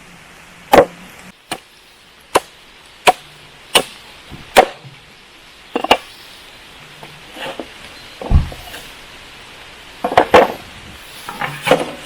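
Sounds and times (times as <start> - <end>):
blade chopping wood: 0.7 - 1.7, 2.3 - 4.9.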